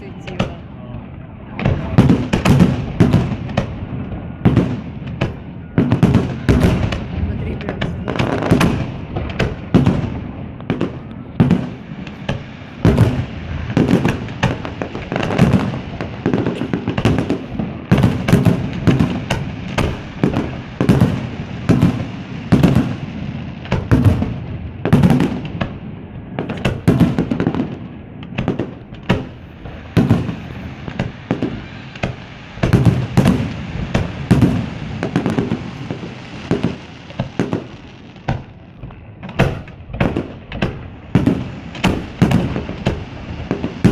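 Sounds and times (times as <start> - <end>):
fireworks bangs: 0.0 - 43.9.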